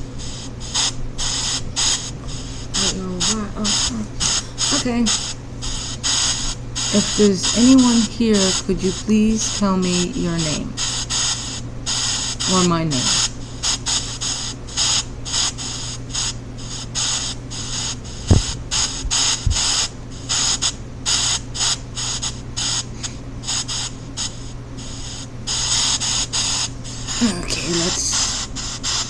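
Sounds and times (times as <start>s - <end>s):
chopped hiss bursts: 0.0s - 29.0s
steady low hum: 0.0s - 29.0s
low thumps: 18.2s - 19.6s.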